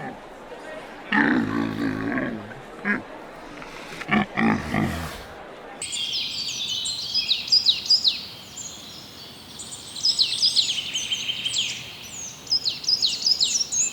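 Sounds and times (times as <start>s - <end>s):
small birds chirping: 3.3s - 13.9s.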